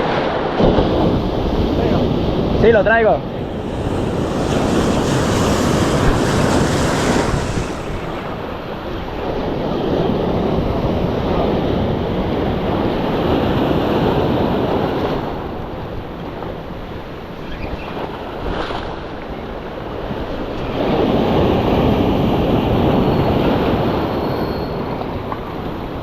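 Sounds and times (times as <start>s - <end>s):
sea surf breaking: 1.0s - 10.0s
wind buffeting microphone: 3.3s - 9.7s.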